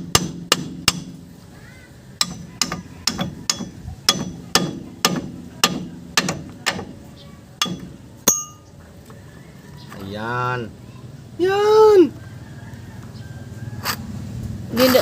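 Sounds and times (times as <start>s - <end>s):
hammer striking metal: 0.0s - 1.3s, 2.2s - 7.0s, 7.6s - 8.7s.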